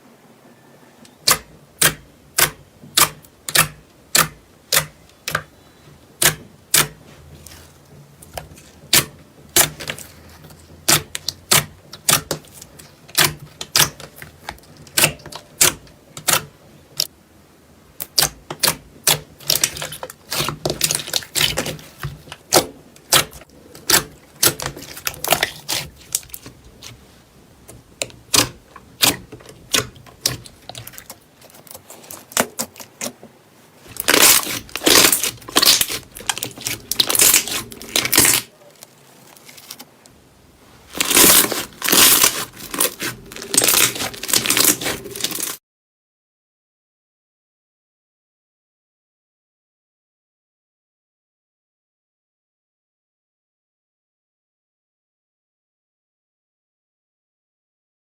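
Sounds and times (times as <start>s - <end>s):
slime clicking and popping: 1.2s - 5.5s, 10.9s - 14.3s, 34.0s - 38.4s.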